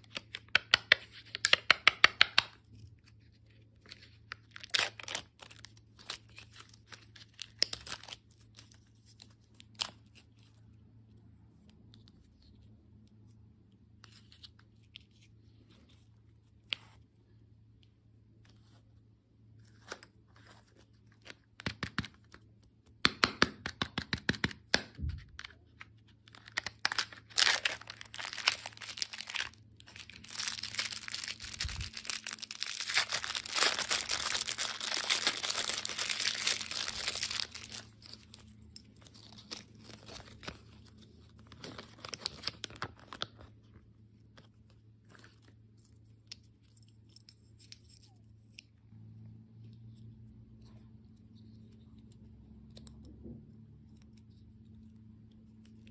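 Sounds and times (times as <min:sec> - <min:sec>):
plastic packaging crinkling and tearing: 0:03.8 - 0:10.5, 0:26.2 - 0:43.8.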